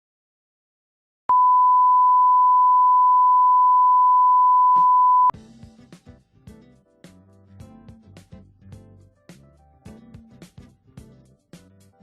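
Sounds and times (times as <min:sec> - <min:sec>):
steady electronic beep: 0:01.3 - 0:05.3.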